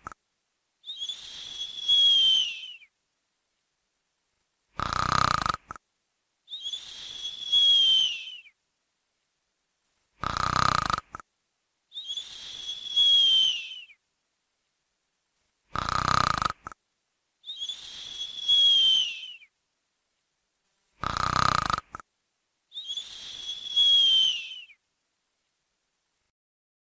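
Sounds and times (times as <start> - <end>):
whistling out-breath: 0.8 - 2.9, 6.5 - 8.6, 11.9 - 14.0, 17.4 - 19.5, 22.7 - 24.8
rasping snore: 4.8 - 5.8, 10.2 - 11.2, 15.7 - 16.8, 21.0 - 22.0.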